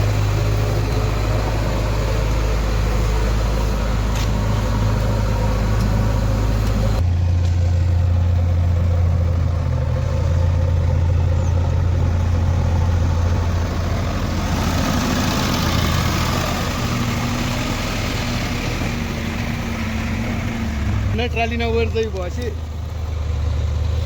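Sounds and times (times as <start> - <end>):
heavy diesel engine running: 0.0 - 24.0.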